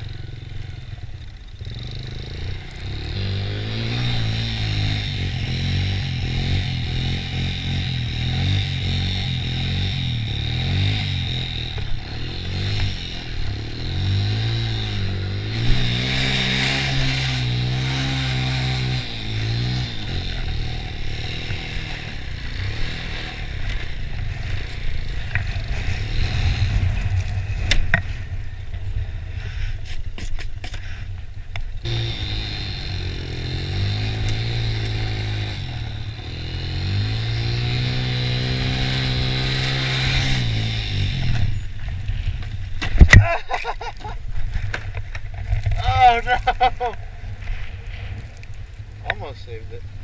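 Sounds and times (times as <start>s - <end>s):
quad engine revving: 0.0s - 28.1s, 31.8s - 42.2s.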